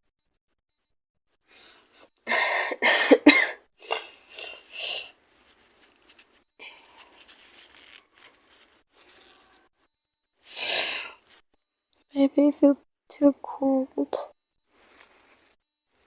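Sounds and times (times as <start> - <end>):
faint breathing: 1.5 - 3.2, 6.5 - 7.8, 10.4 - 11.3
woman coughing: 2.4 - 4.1
woman speaking: 12.1 - 14.3.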